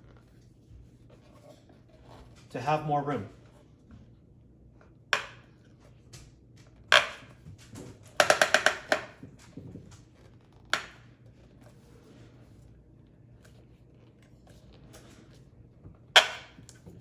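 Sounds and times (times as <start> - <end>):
plastic knocks: 6.9 - 7.3, 8.2 - 10.0, 16.2 - 17.0.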